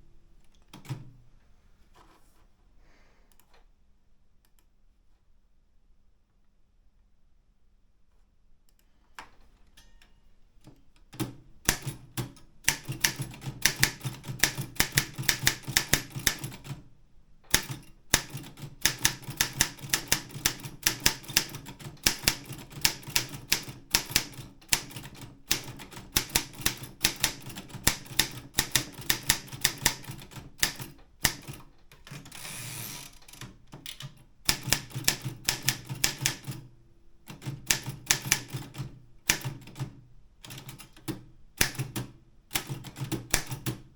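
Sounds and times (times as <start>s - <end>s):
typewriter keys clacking: 17.5s - 36.6s
typewriter carriage rasping slide: 32.0s - 33.4s.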